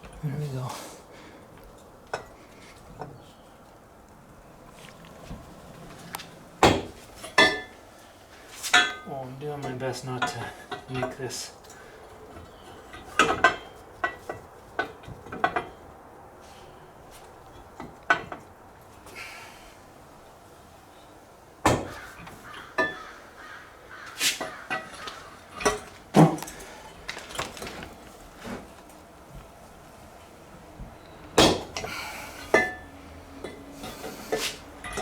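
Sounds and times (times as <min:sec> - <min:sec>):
metal tools clinking and knocking: 0:24.7 - 0:27.8, 0:32.5 - 0:35.0.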